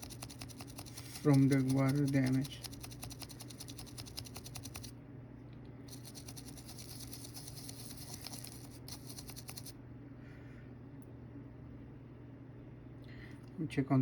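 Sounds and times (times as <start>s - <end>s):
small brush scrubbing circuit board: 0.0s - 4.9s, 5.9s - 9.7s.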